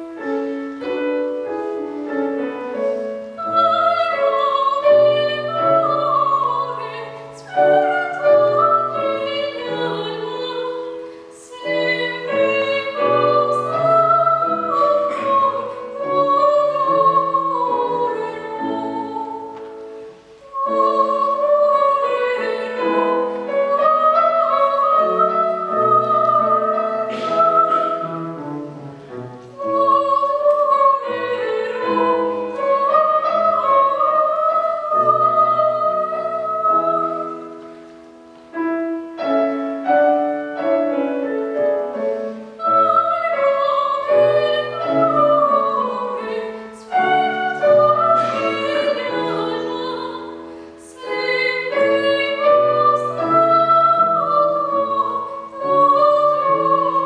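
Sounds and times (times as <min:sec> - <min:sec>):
piano accompaniment: 0:00.0 - 0:57.0
child singing with vibrato: 0:03.3 - 0:19.6, 0:20.5 - 0:28.1, 0:42.4 - 0:57.0.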